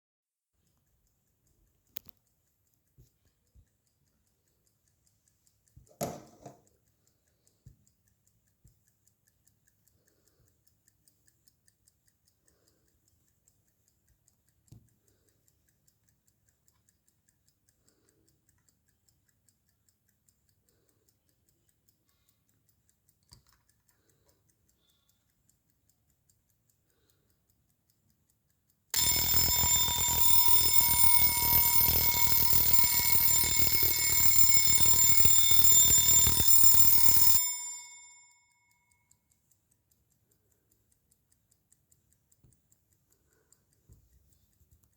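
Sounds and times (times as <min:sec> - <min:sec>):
alarm clock ticking: 0:00.6 - 0:44.6
alarm bell ringing: 0:29.0 - 0:38.7.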